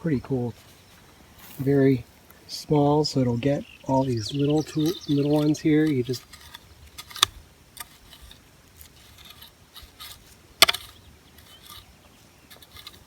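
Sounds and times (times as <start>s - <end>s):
weeder scraping through soil: 4.2s - 13.0s.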